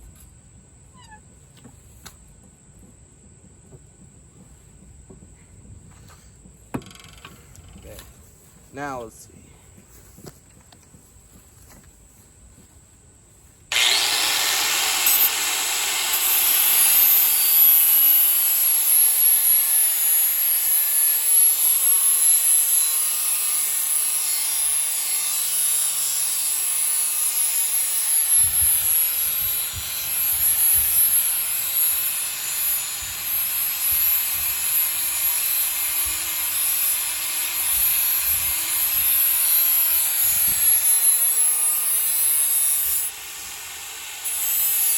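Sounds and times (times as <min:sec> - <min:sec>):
electric sander high whine: 0:13.7 - 0:19.4.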